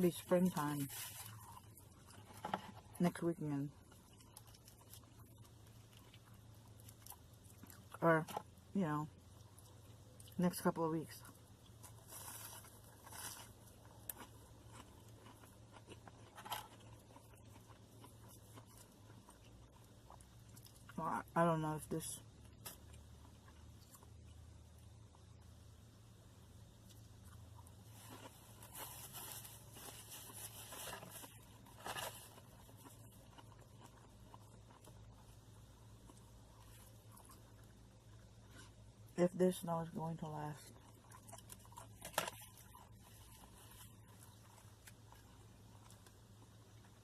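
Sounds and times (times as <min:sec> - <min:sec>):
low steady hum: 0:00.0 - 0:47.0
person chewing food: 0:00.9 - 0:03.0, 0:03.8 - 0:10.4, 0:11.3 - 0:21.0, 0:22.3 - 0:25.5, 0:26.7 - 0:39.1, 0:40.7 - 0:47.0
small crunches: 0:03.8 - 0:08.5, 0:11.6 - 0:21.0, 0:26.8 - 0:35.4, 0:40.7 - 0:47.0.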